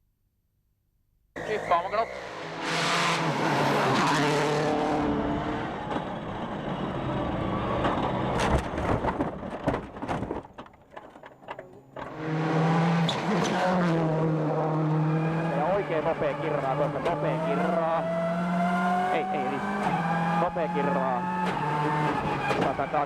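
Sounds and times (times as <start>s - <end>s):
rally car engine at high revs: 1.4s - 9.2s, 12.0s - 23.0s
sharp clicks and knocks: 7.8s - 12.2s.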